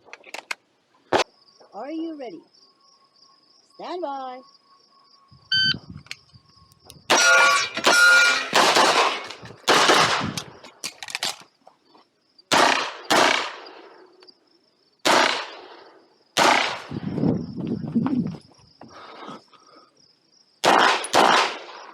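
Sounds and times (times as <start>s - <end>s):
metallic ring: 7.1s - 8.6s
handgun shots: 7.1s - 10.5s, 12.5s - 13.6s, 15.1s - 15.5s, 16.4s - 16.8s, 20.6s - 21.7s.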